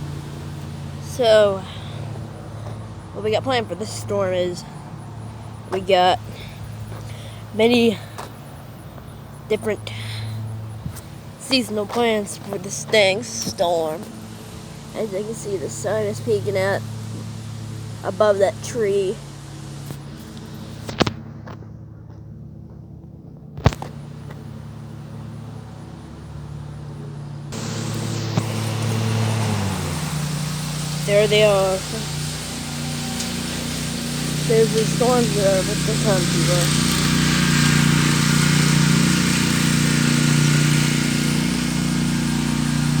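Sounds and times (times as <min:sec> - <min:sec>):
low mechanical hum: 0:00.0 - 0:43.0
motor humming: 0:23.8 - 0:43.0.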